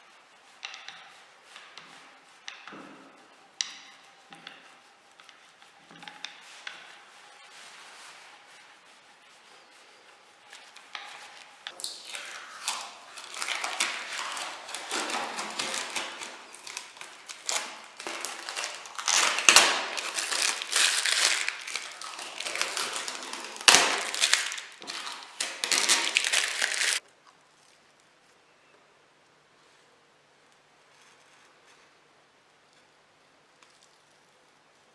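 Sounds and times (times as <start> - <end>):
crunching and crackling: 0.0 - 27.8.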